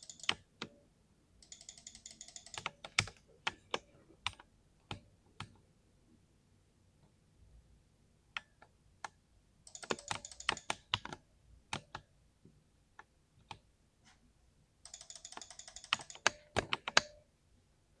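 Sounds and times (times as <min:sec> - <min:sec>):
mechanical keyboard typing: 0:00.0 - 0:00.7, 0:01.4 - 0:05.5, 0:09.7 - 0:12.0, 0:14.9 - 0:17.2.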